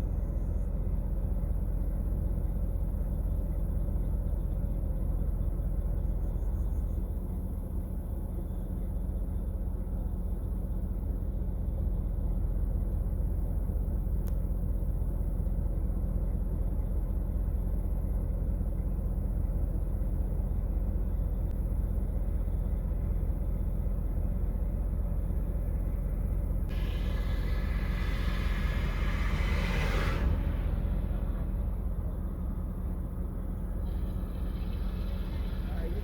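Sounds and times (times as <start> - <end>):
motor vehicle rumble: 0.0 - 36.0
faint click: 14.2 - 14.4.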